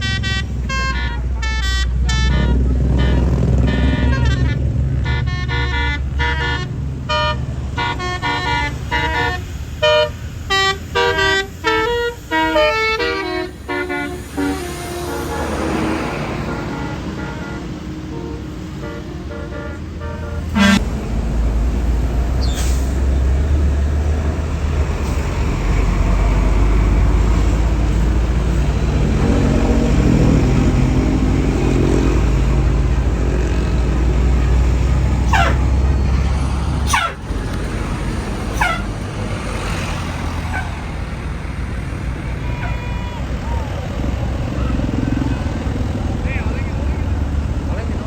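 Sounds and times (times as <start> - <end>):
diesel bus engine rumbling: 0.0 - 48.0
sudden loud burst: 12.3 - 17.6
short sharp hisses or squeaks: 22.4 - 23.0.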